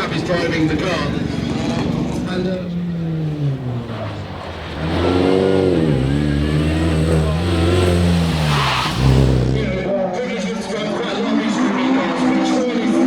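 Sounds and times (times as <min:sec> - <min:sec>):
car engine revving hard: 0:02.9 - 0:09.8.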